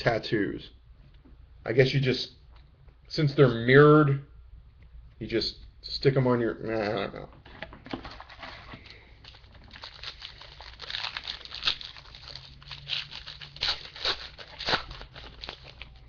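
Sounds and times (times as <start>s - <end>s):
wrapper crinkling: 8.0s - 16.0s.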